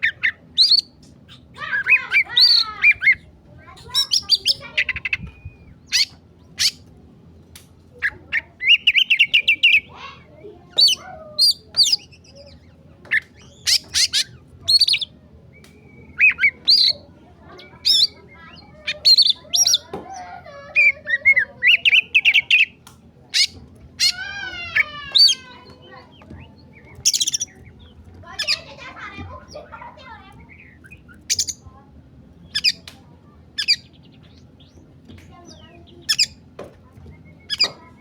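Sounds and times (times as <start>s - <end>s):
songbird whistles squawks and trills: 0.0s - 6.9s, 7.9s - 31.7s, 32.4s - 38.0s.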